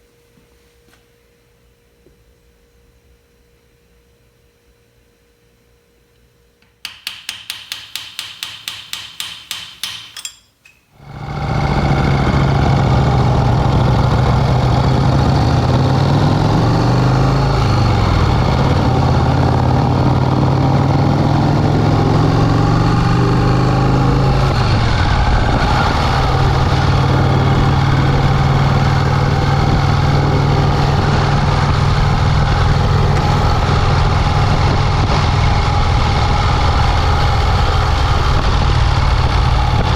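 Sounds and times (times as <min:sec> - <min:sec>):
motorcycle engine running: 0:11.0 - 0:39.9.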